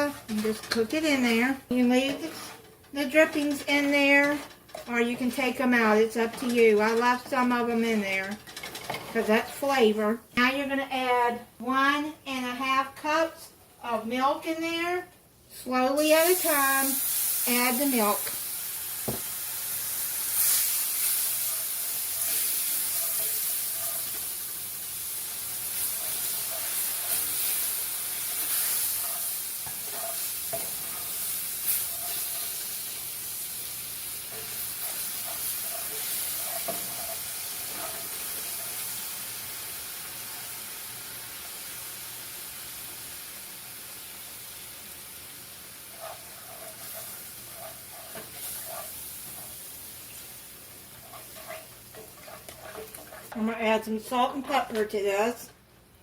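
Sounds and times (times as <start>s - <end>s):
spatula scraping a pan: 0.0s - 9.7s, 19.9s - 40.5s, 45.7s - 54.8s
milk sizzling in a hot pan: 16.0s - 53.8s.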